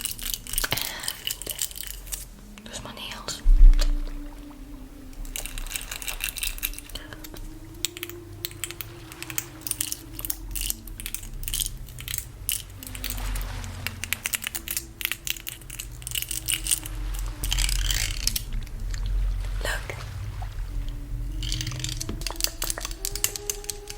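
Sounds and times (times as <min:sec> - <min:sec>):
person humming a slow tune: 0:00.0 - 0:23.9
crackly handling clicks and taps: 0:21.4 - 0:23.9.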